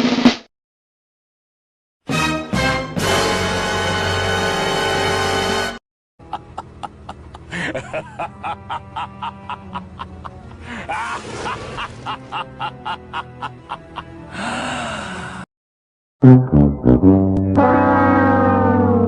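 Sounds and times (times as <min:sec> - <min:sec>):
music: 0:02.0 - 0:15.4, 0:16.2 - 0:17.8.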